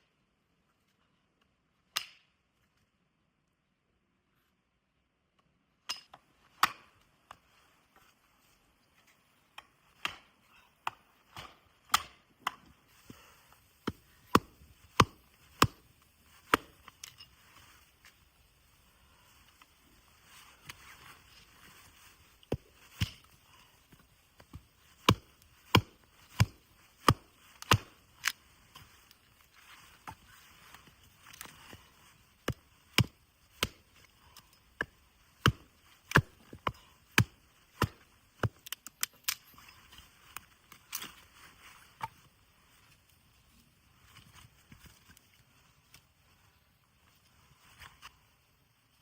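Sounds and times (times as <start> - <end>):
wood being chopped: 10.0 - 12.7, 13.8 - 16.8, 22.4 - 23.3, 24.4 - 29.0, 32.4 - 34.0, 34.8 - 39.2.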